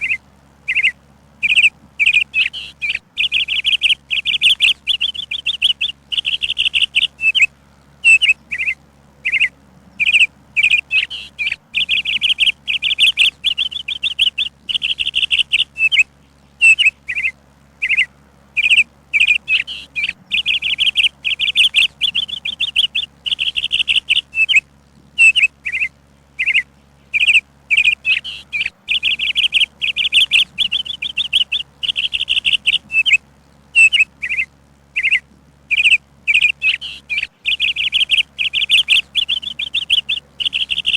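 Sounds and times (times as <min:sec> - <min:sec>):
small songbird chirping: 0:00.0 - 0:40.9.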